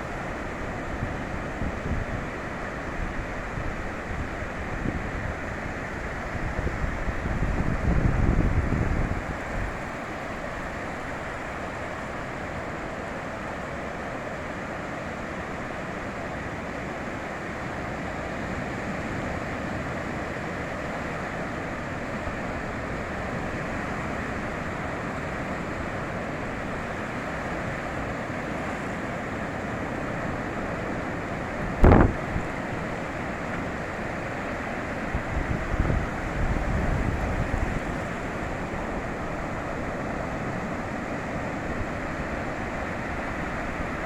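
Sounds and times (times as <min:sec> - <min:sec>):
waves breaking on beach: 0:00.0 - 0:44.0.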